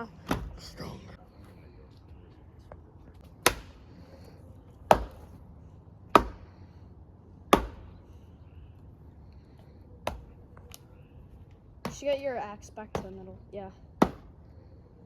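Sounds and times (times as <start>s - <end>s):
axe chopping log: 0.2s - 0.6s, 3.3s - 3.9s, 4.8s - 5.4s, 6.1s - 6.6s, 7.5s - 8.0s, 10.0s - 10.3s, 14.0s - 14.4s.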